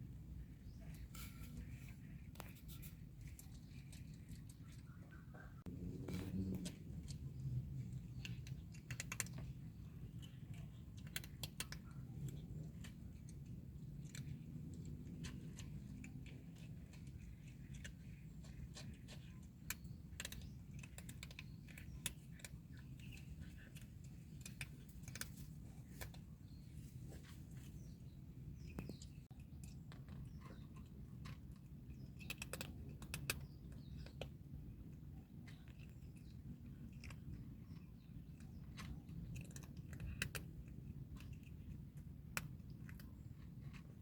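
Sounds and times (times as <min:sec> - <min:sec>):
cats crunching dry kibble: 0:00.0 - 0:44.0.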